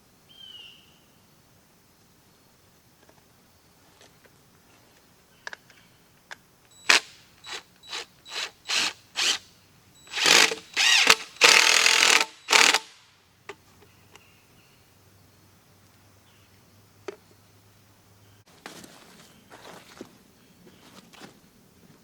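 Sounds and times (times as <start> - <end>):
hand mechanism ratcheting: 6.8 - 9.4, 10.1 - 13.0.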